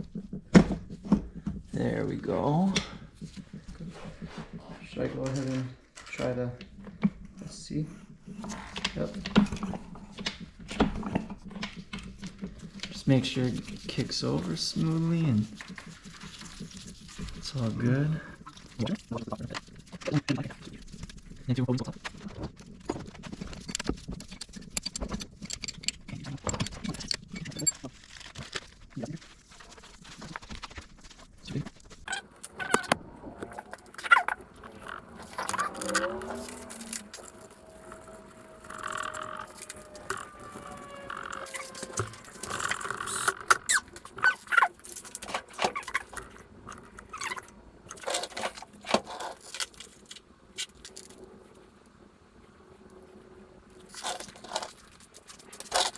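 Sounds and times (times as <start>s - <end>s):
faint falling squeak: 32.1s - 50.0s
tools clicking and clinking: 32.1s - 51.2s.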